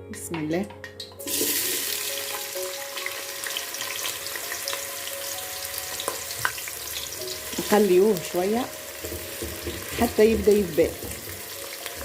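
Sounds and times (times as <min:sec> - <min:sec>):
onion sizzling in hot oil: 0:01.2 - 0:12.0.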